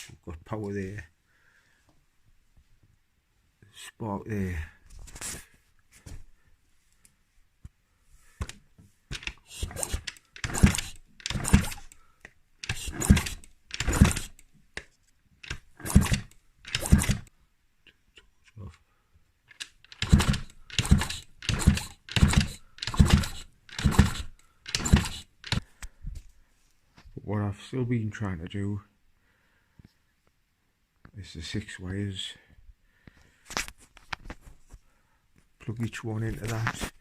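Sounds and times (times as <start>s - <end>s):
motorcycle kick-starter strokes: 8.4s - 12.0s, 12.6s - 14.5s, 15.4s - 17.3s, 19.5s - 25.7s
engine turning over without firing: 9.1s - 12.0s, 12.6s - 14.4s, 15.4s - 17.3s, 19.6s - 25.6s.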